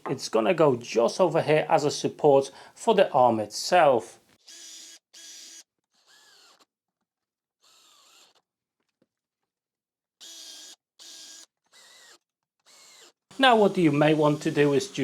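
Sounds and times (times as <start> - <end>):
power drill driving screws: 4.4 - 6.7, 7.6 - 8.5, 10.2 - 15.0.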